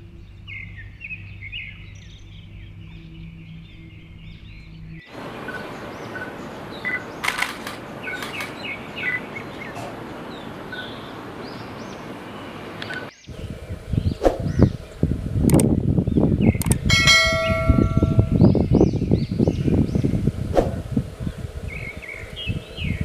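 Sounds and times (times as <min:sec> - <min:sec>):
small birds chirping: 0:00.0 - 0:23.0
steady hiss: 0:05.0 - 0:15.8, 0:19.3 - 0:23.0
sharp clicks: 0:07.2 - 0:08.7, 0:15.4 - 0:15.8, 0:16.5 - 0:16.9
low metallic clanging: 0:16.9 - 0:18.8.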